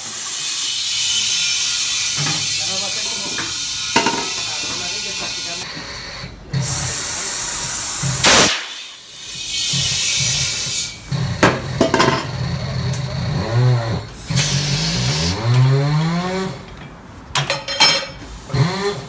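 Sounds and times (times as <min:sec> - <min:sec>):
compressed air hissing: 0:00.0 - 0:05.6, 0:06.6 - 0:12.3.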